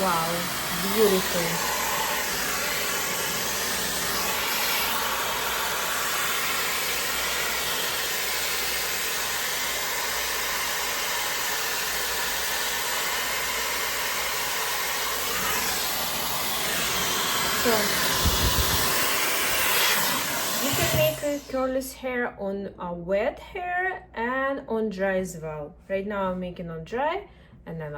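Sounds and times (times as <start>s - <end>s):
hair dryer brush blowing air: 0.0s - 21.8s.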